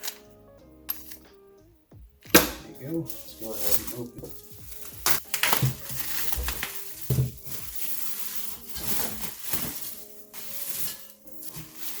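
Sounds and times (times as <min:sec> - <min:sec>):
knocks of parts handled: 0:02.2 - 0:02.8, 0:03.6 - 0:07.7
packaging rustling and crinkling: 0:03.1 - 0:12.0.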